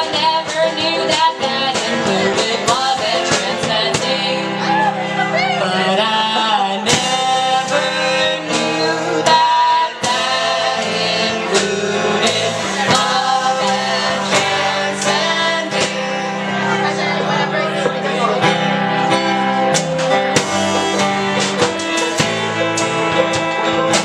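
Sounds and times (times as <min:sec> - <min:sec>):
man and woman singing together: 0:00.0 - 0:18.6
folk band playing: 0:00.0 - 0:24.0.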